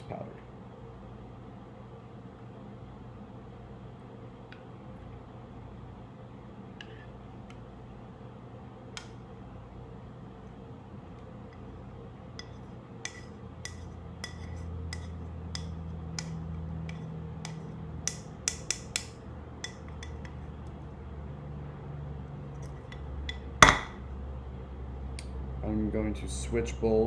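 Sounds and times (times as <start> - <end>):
low steady hum: 0.0 - 27.0
utensil clinking against a bowl: 12.4 - 20.4, 22.6 - 24.0.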